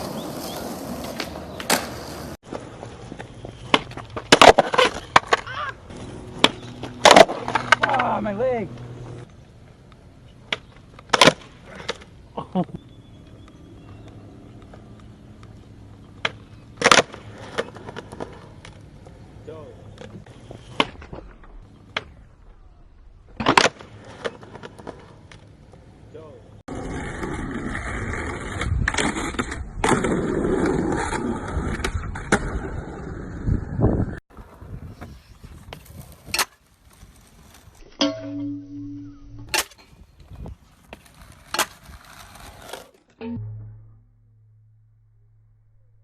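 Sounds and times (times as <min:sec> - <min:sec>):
skateboard rolling rumble: 0:00.0 - 0:11.0, 0:11.6 - 0:37.9, 0:40.1 - 0:43.1
skateboards clacking on ground: 0:00.0 - 0:12.2, 0:13.2 - 0:22.2.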